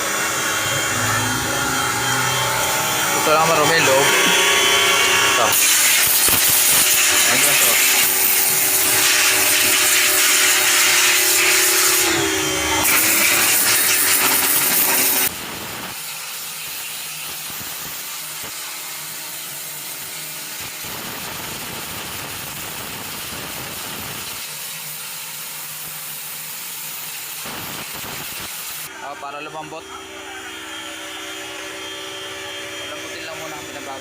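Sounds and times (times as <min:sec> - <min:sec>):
motor tool scraping: 0:00.0 - 0:15.4.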